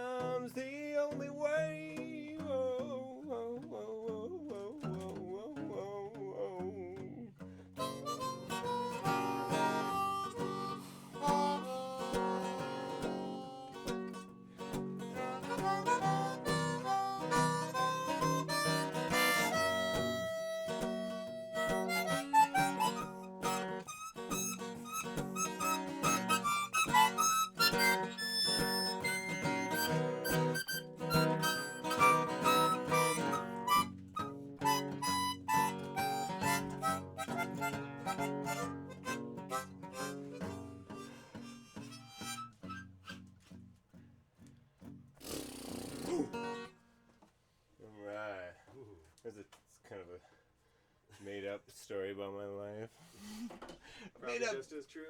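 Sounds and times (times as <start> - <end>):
strummed acoustic guitar: 0.0 - 47.2
harmonica melody: 7.8 - 43.3, 45.2 - 46.8.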